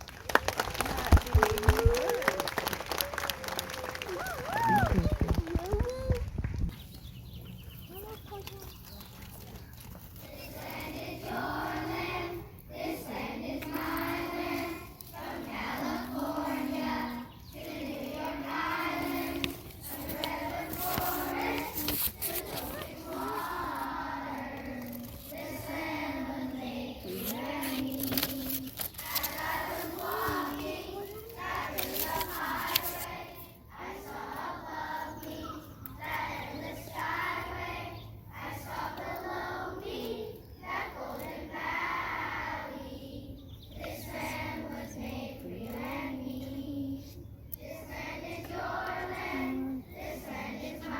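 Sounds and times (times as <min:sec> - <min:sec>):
children singing in unison: 0:10.4 - 0:50.9.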